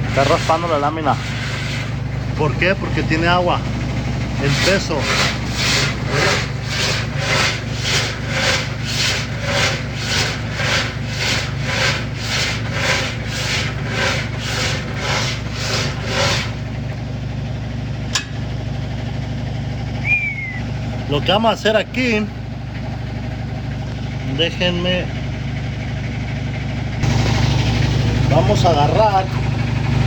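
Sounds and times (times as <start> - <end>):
washer tub scraping metal panel: 0.0 - 3.6, 4.4 - 16.7
washer motor hum: 0.0 - 30.0.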